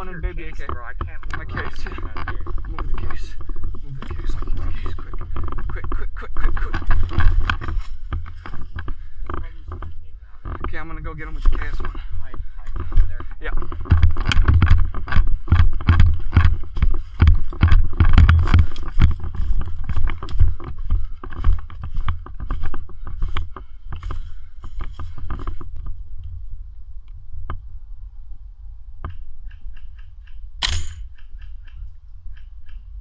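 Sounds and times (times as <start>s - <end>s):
scattered clicks: 0.4s - 9.8s
clothing and gear rustling: 6.6s - 10.0s, 16.5s - 25.7s
footsteps through brush and mud: 13.7s - 25.8s
sharp crack: 30.6s - 31.3s.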